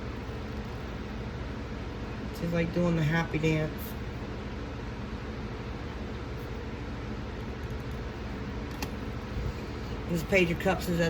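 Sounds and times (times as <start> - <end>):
background hum and hiss: 0.0 - 11.0
person speaking: 2.3 - 4.0, 9.9 - 11.0.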